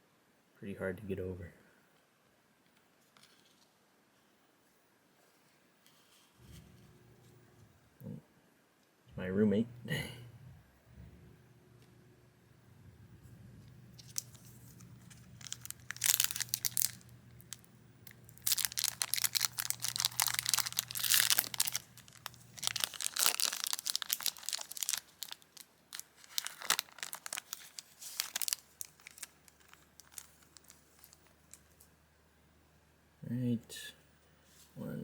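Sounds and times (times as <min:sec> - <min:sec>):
faint low hum: 0:00.0 - 0:35.0
foil wrapper tearing and crinkling: 0:14.0 - 0:31.8.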